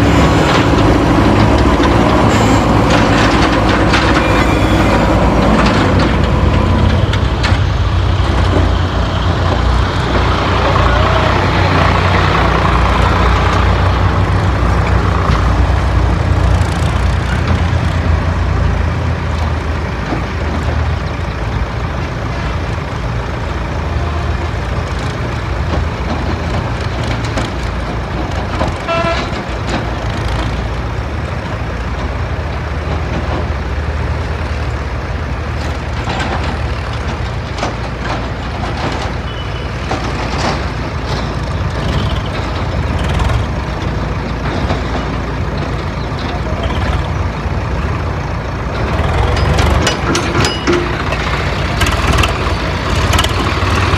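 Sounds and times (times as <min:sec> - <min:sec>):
diesel engines running under load: 0:00.0 - 0:53.9.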